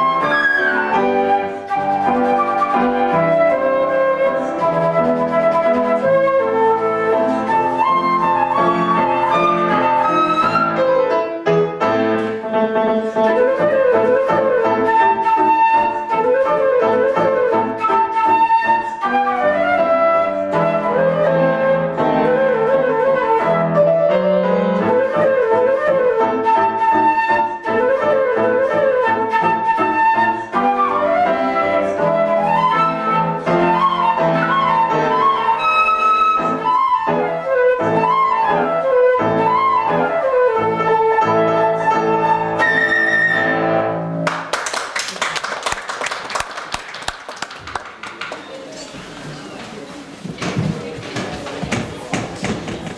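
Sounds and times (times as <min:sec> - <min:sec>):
flute playing quick melody: 0:00.0 - 0:11.2, 0:13.2 - 0:44.2
steady lower accompaniment: 0:00.0 - 0:44.5.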